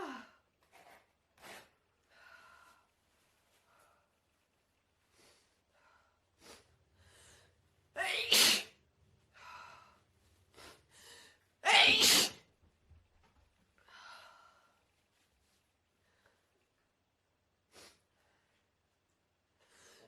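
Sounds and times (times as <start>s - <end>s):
person sneezing: 8.0s - 8.7s, 11.7s - 12.4s.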